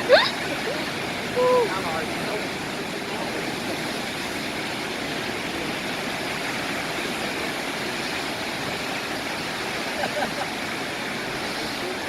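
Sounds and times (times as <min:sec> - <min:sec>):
ocean surf roaring: 0:00.0 - 0:12.0.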